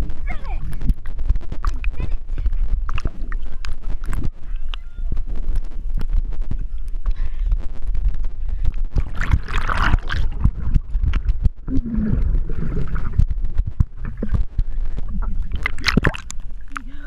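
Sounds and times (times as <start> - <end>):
steady low rumble: 0.0 - 17.0
pool water splashing and gurgling: 8.9 - 17.0.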